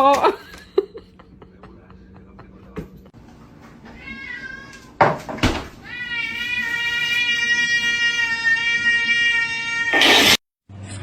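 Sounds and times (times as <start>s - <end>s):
cat meowing: 3.9s - 5.0s, 5.8s - 10.4s.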